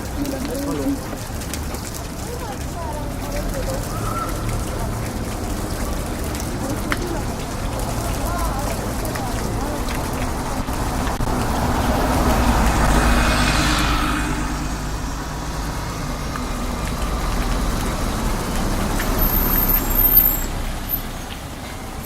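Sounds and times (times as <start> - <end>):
train rumbling: 4.7 - 22.0
rush of noise: 8.0 - 18.5.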